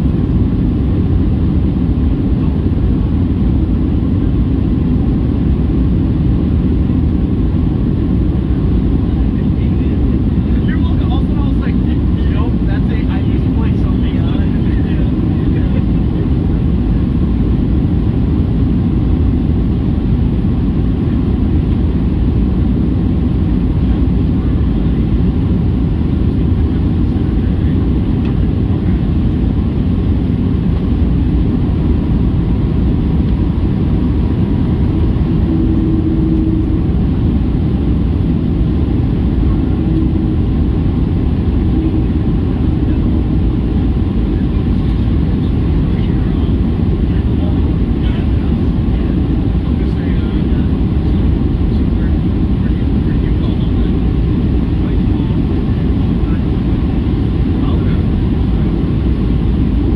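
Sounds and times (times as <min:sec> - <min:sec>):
airplane engines roaring in cabin: 0:00.0 - 0:59.9
air rushing around fuselage: 0:29.1 - 0:52.8.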